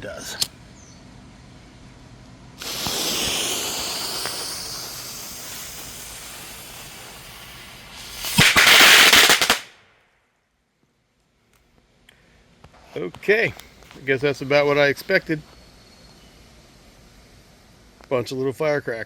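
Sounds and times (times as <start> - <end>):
firework fountain hissing spray: 2.6 - 9.7
firecracker pops crackling: 2.6 - 9.9.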